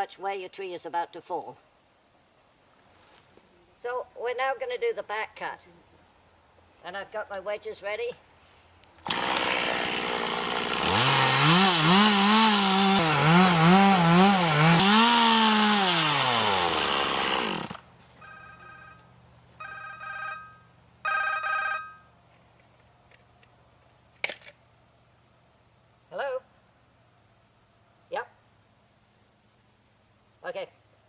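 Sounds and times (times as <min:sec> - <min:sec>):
chainsaw revving: 0:09.0 - 0:17.8
phone ringtone: 0:18.2 - 0:22.1.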